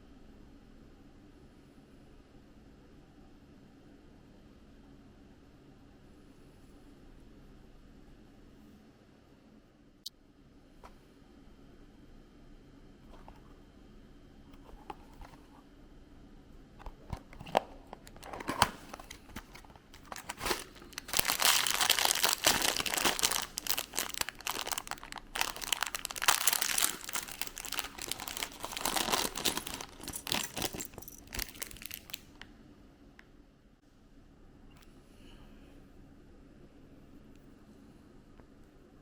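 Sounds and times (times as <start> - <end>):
packaging crinkling and tearing: 18.1 - 32.4.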